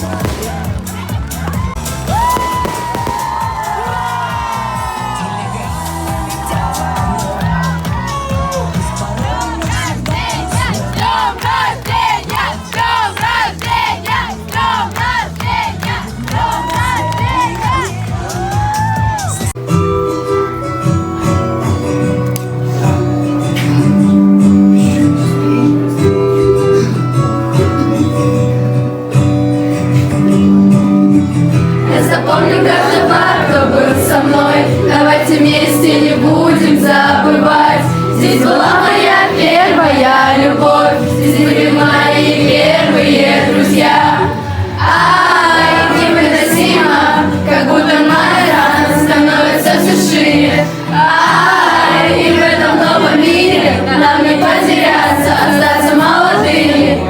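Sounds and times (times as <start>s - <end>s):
several voices singing: 8.5s - 17.8s, 31.7s - 57.0s
guitar chords: 19.6s - 57.0s.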